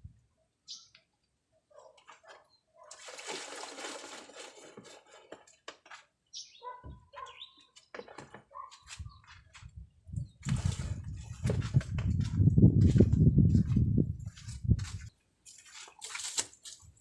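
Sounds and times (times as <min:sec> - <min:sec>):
water splashing and trickling: 0:02.1 - 0:06.1, 0:10.4 - 0:12.9, 0:14.3 - 0:17.0.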